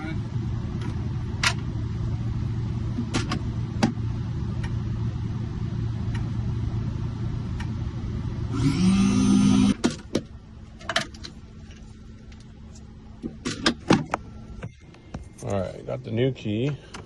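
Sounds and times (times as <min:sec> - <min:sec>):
key-cutting machine humming: 0:08.5 - 0:09.8.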